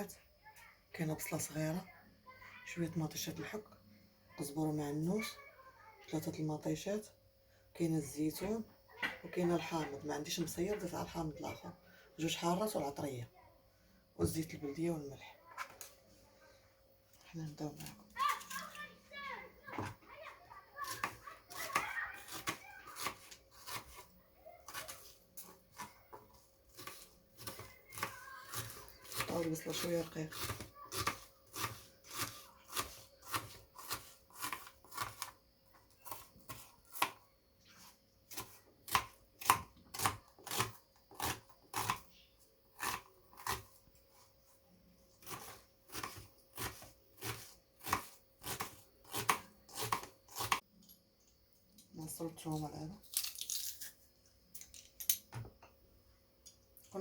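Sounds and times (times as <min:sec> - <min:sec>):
knife slicing an onion: 0:20.8 - 0:37.2, 0:37.8 - 0:42.1, 0:42.7 - 0:43.8, 0:45.2 - 0:50.6.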